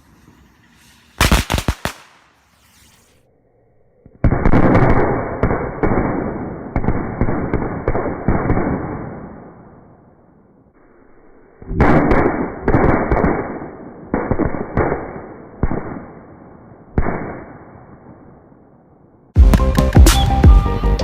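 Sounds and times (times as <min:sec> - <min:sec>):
firecracker bangs with echo: 0:01.2 - 0:02.3
loud music: 0:19.4 - 0:21.0.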